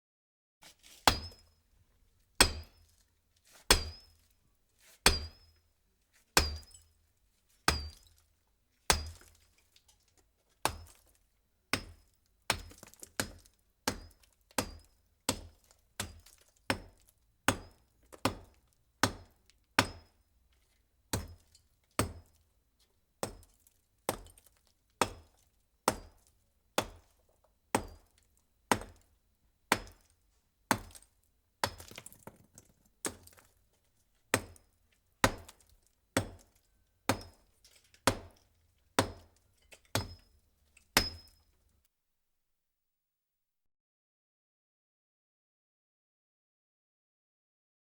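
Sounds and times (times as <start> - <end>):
blows striking a brick wall: 5.0 - 5.5.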